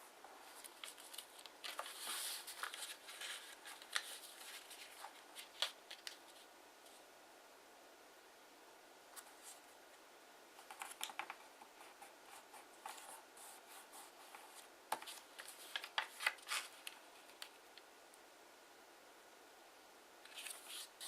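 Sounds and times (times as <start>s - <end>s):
paper rustling and crinkling: 0.3s - 6.5s, 10.6s - 17.6s, 20.3s - 21.0s.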